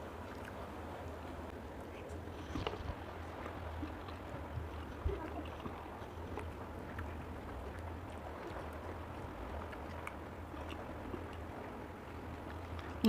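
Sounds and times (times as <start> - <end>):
steady low hum: 0.0 - 13.0
faint clicks while eating: 9.6 - 11.5.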